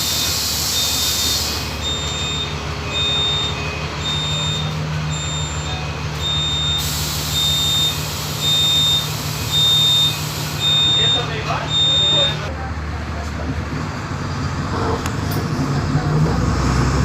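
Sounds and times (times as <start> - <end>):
electronic warning beep: 0.0 - 12.5
bus engine humming: 0.0 - 17.0.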